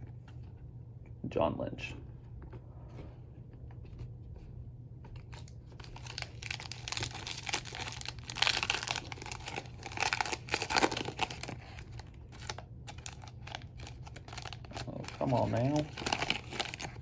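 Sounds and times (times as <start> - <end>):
foil wrapper tearing and crinkling: 5.2 - 17.0.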